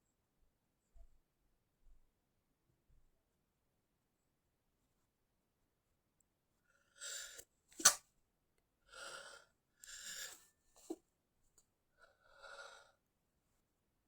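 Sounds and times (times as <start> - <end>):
breathy breaths: 8.9 - 11.0, 12.0 - 13.1.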